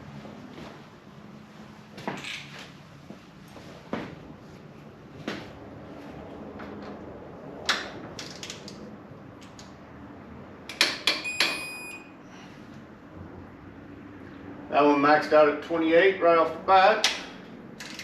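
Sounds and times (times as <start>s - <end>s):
short high electronic beep: 11.3s - 12.1s.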